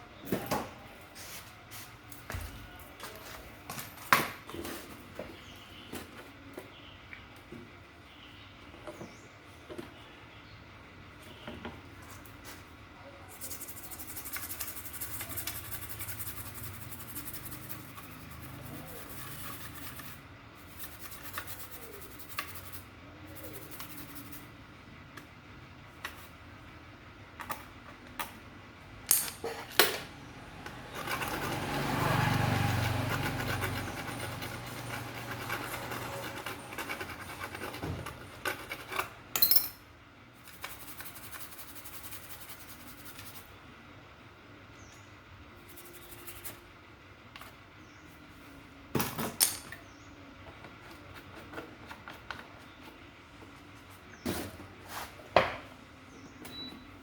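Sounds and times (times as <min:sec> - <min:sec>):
rubbing and scraping: 0:13.3 - 0:24.5, 0:30.6 - 0:39.2.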